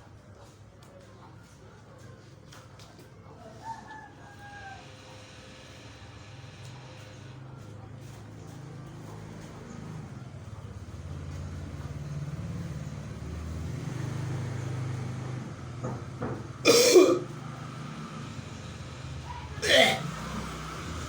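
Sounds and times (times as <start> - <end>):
person coughing: 16.7 - 17.3, 19.6 - 20.1.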